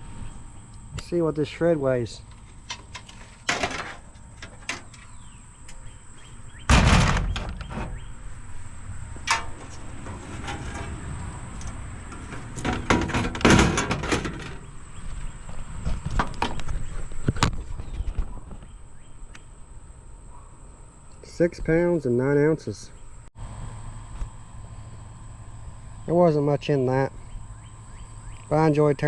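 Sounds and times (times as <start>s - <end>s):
scrap parts knocking and clattering: 2.2s - 5.3s, 6.7s - 8.0s, 9.2s - 14.7s
scrap rattling: 2.2s - 5.4s, 6.7s - 8.4s, 9.1s - 17.0s
heavy thump: 6.7s - 8.1s, 9.2s - 14.7s.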